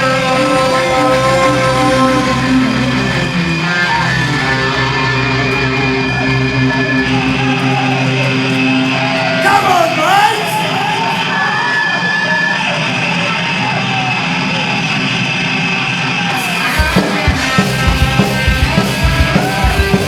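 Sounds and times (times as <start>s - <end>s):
punk rock band playing: 0.0s - 11.9s, 16.3s - 20.0s
person shouting: 9.4s - 11.6s.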